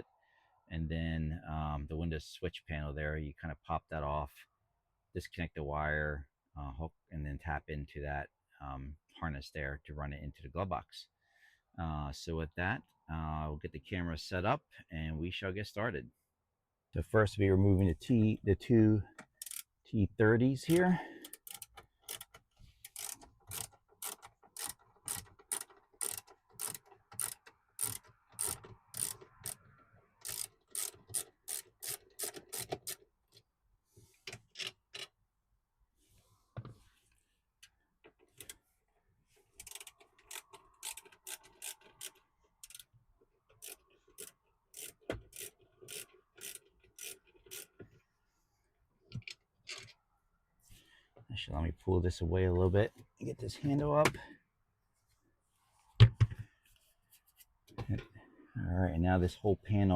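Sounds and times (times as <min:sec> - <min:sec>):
hand ratchet clicking: 0:19.2 - 0:19.7, 0:20.7 - 0:29.6, 0:30.2 - 0:33.0, 0:39.6 - 0:42.9, 0:43.5 - 0:47.8.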